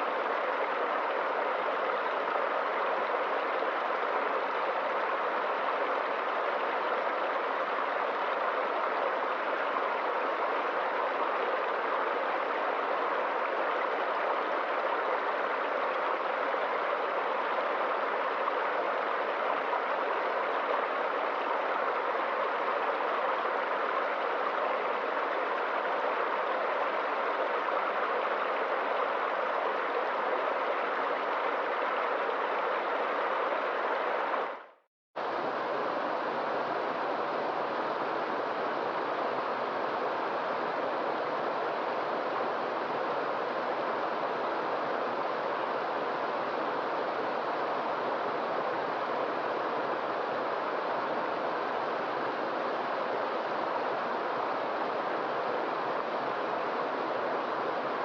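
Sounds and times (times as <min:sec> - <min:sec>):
stream rushing over waterfalls: 0:00.0 - 0:58.0.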